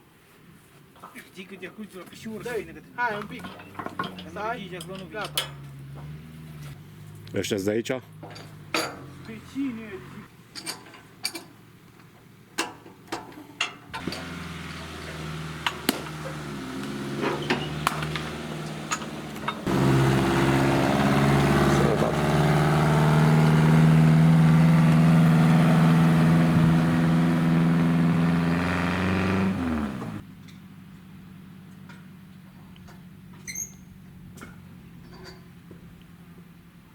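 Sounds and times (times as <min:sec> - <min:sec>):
motor humming: 0:14.0 - 0:30.2.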